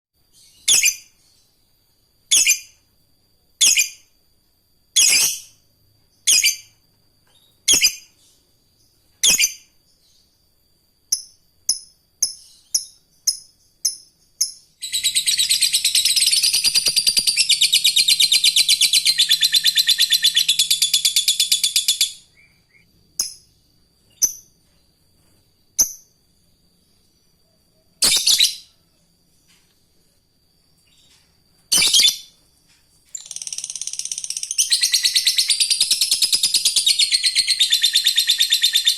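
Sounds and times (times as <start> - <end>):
lovebird chattering trill: 12.3 - 23.4, 31.7 - 32.3, 33.1 - 38.9
lovebird calls: 14.8 - 22.9, 30.9 - 32.3, 33.1 - 38.9.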